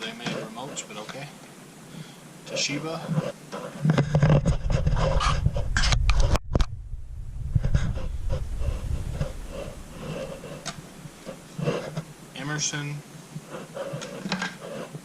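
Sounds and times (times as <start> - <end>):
microphone handling noise: 3.1 - 12.2.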